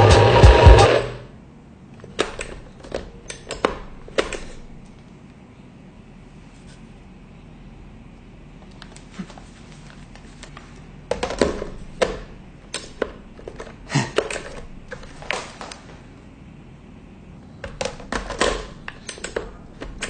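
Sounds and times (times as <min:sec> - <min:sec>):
hard objects clicking and knocking: 0:02.0 - 0:04.9, 0:11.1 - 0:15.8, 0:17.6 - 0:20.0.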